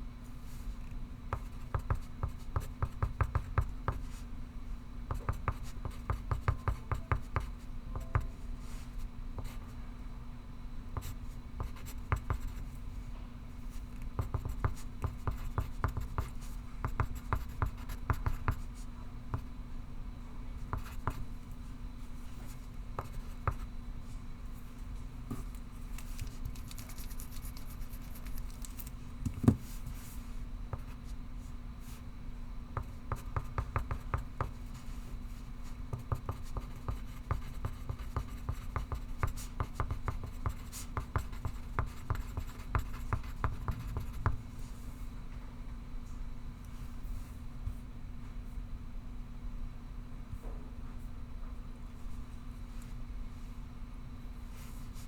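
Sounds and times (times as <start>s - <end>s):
pencil scratching on paper: 14.2s - 18.6s, 26.6s - 28.3s, 35.9s - 44.3s.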